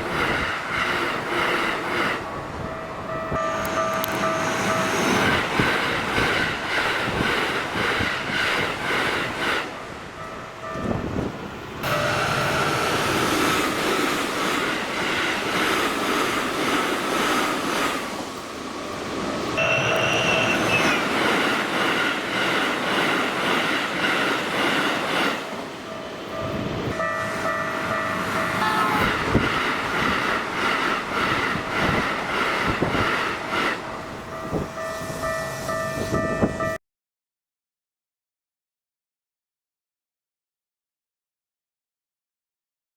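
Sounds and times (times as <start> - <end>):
train wheels clattering over rails: 0.0 - 2.2, 3.6 - 9.7, 11.1 - 25.8, 27.6 - 34.8
crossing alarm bells ringing: 2.5 - 5.7, 9.8 - 13.7, 18.4 - 21.9, 25.2 - 29.6, 33.9 - 36.8.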